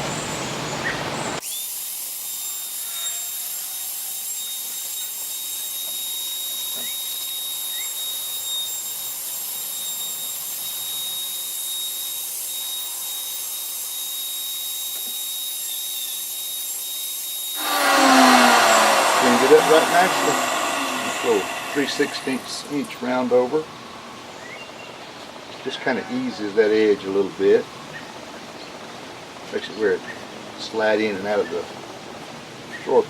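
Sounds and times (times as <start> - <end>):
router high whine: 17.6 - 22.9.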